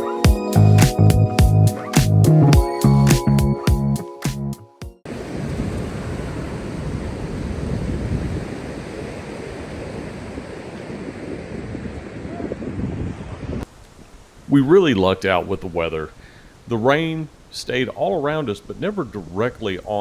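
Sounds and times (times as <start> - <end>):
music: 0.0 - 5.0
surf of waves: 5.0 - 15.6
wind blowing across microphone: 5.1 - 16.7.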